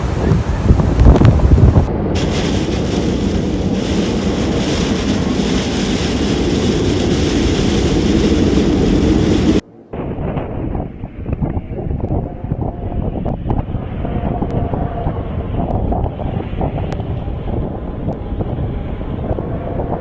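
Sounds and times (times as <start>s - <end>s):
floodwater rushing: 0.0s - 9.6s
wind buffeting microphone: 0.0s - 20.0s.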